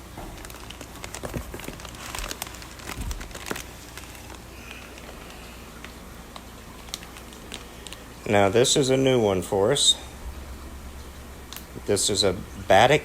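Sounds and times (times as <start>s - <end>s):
plastic bags crinkling: 0.0s - 8.9s
faint low hum: 0.0s - 13.0s.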